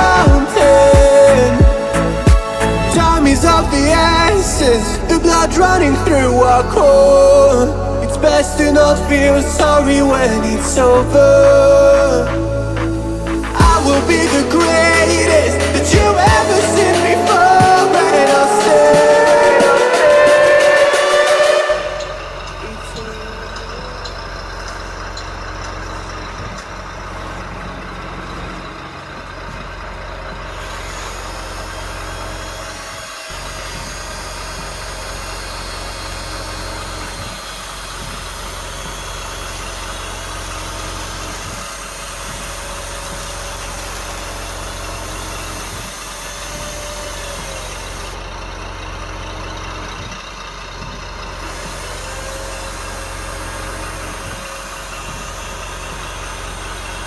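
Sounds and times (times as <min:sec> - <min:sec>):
hydraulic pumps whining: 0:00.0 - 0:57.0
small electric motors droning: 0:13.8 - 0:57.0.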